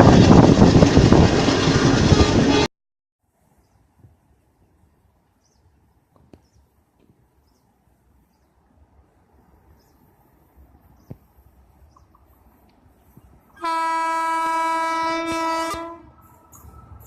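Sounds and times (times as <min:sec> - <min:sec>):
low rumble of train: 0:00.0 - 0:02.7, 0:03.3 - 0:17.0
train horn blast: 0:01.6 - 0:02.7, 0:13.6 - 0:16.3.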